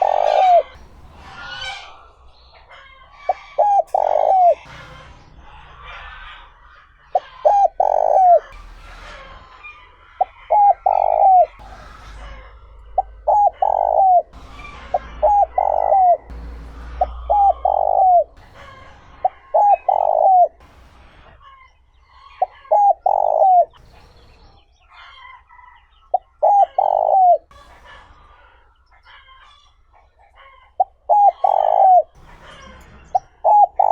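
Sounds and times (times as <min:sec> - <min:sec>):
dove cooing: 0:00.0 - 0:02.0, 0:02.7 - 0:04.7, 0:07.1 - 0:08.6, 0:10.2 - 0:20.6, 0:22.3 - 0:23.8, 0:26.1 - 0:28.5, 0:30.4 - 0:33.9
small birds chirping: 0:00.0 - 0:08.6, 0:09.4 - 0:33.9.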